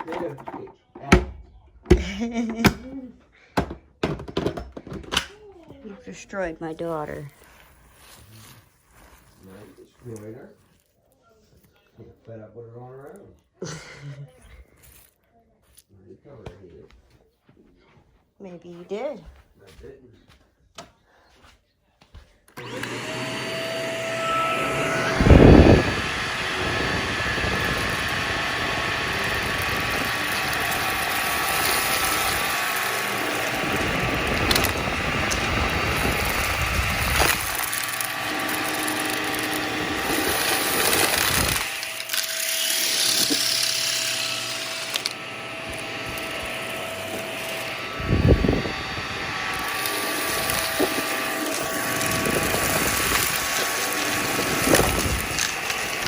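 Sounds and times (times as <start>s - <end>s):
vacuum cleaner running: 22.6s - 56.0s.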